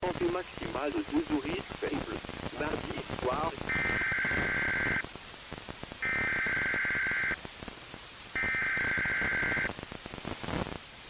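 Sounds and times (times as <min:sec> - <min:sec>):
buzzy digital data tones: 0:01.5 - 0:05.1, 0:06.0 - 0:07.4, 0:08.3 - 0:10.8.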